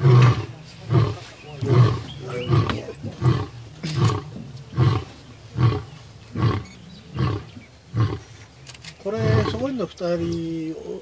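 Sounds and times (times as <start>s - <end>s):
lion roaring: 0.0s - 8.4s.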